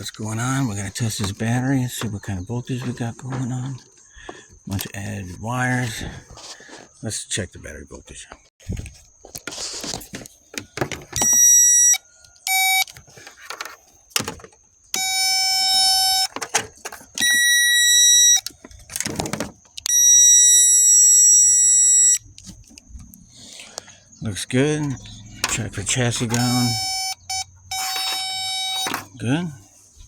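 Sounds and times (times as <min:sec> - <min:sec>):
battery tester beeping: 0:11.2 - 0:13.0, 0:14.9 - 0:16.4, 0:17.1 - 0:18.5, 0:19.8 - 0:22.3, 0:25.6 - 0:29.3.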